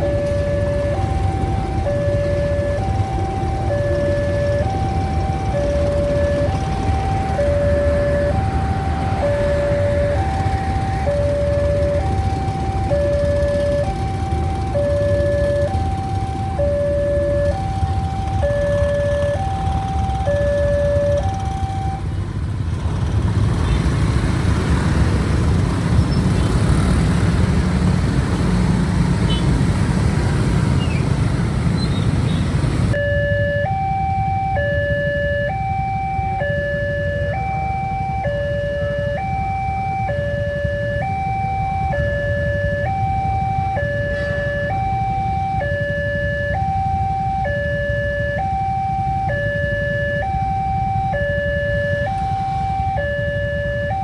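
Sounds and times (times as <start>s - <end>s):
level crossing alarm two-tone: 0.0s - 22.1s, 32.9s - 54.0s.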